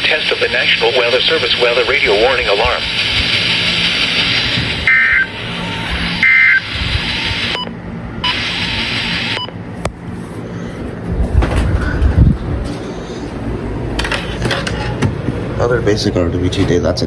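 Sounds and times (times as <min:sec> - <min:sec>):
radio static hiss: 0:00.0 - 0:10.0
shrill digital data tones: 0:00.6 - 0:09.5.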